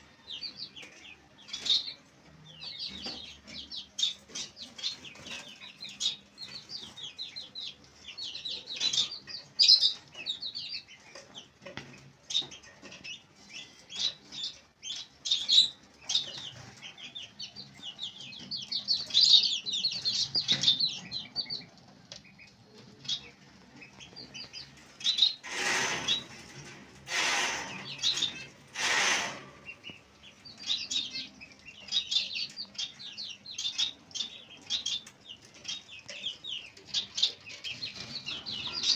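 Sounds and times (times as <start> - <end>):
baby chicks peeping: 0.0 - 38.9
loud rustling bursts: 25.4 - 29.7.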